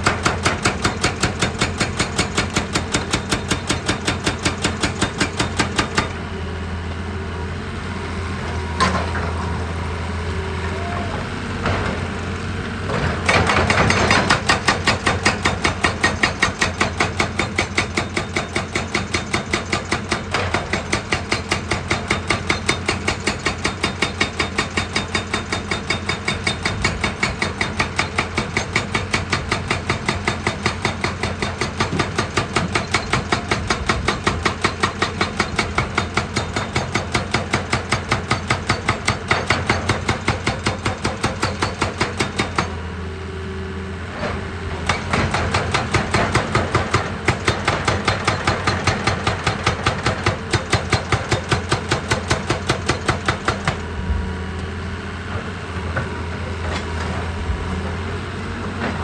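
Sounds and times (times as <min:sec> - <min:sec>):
machine hammering rock: 0:00.0 - 0:06.2, 0:12.9 - 0:42.8, 0:44.8 - 0:54.2
engine running: 0:01.4 - 0:17.3, 0:42.3 - 0:59.0.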